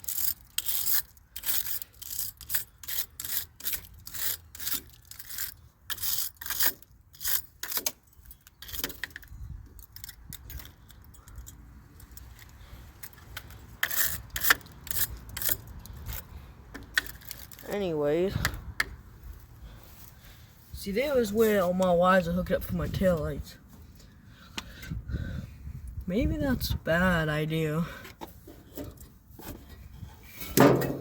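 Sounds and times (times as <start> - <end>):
brush scrubbing battery terminals: 0.0 - 18.7.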